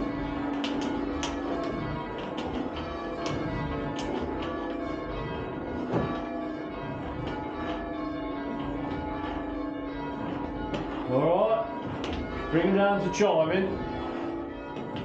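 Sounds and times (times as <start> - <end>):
church bells ringing: 0.0 - 15.0.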